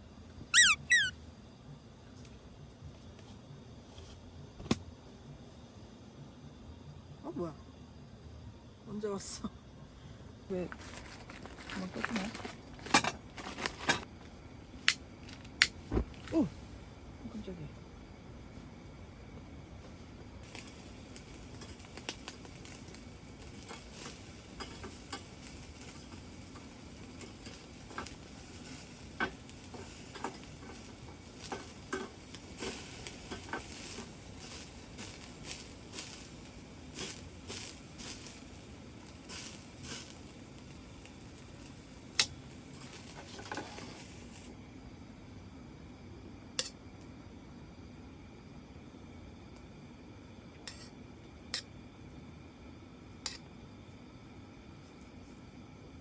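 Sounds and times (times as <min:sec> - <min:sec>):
fat crackling and popping: 0:10.5 - 0:16.5, 0:20.4 - 0:44.6
beef sizzling on a grill: 0:20.4 - 0:44.6.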